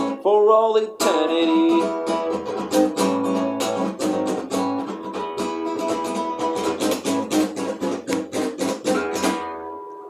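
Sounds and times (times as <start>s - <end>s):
guitar strumming chords: 0.0s - 10.0s.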